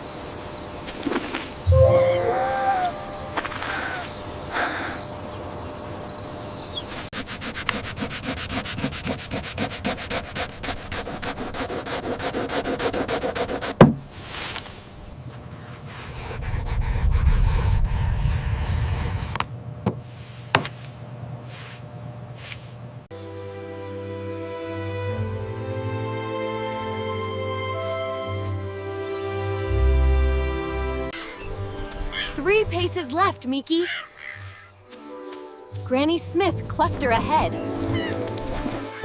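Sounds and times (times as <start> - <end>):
fast rubbing strokes: 6.9 - 19.4
sharp knock: 13.8 - 14.1
low rumble: 16.2 - 19.3.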